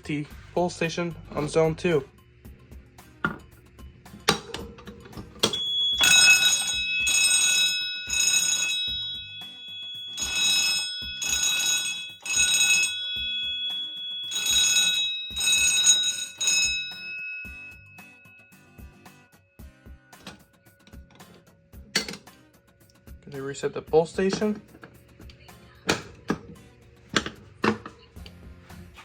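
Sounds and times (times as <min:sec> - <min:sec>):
fire alarm blasts: 0:05.4 - 0:17.7
steady high tone: 0:05.4 - 0:19.3.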